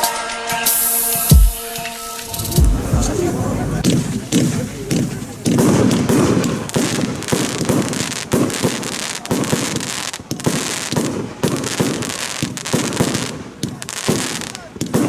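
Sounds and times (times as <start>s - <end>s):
firework crackling hiss: 0.6s - 15.0s.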